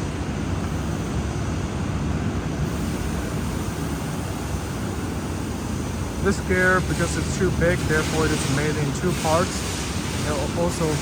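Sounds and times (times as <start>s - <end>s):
factory machinery din: 2.4s - 11.0s.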